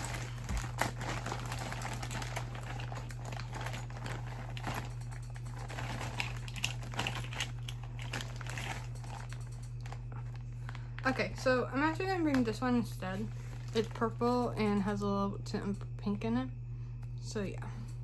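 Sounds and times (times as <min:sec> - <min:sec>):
plastic toys clicking and rustling: 0:00.0 - 0:10.0
steady low hum: 0:00.0 - 0:18.0.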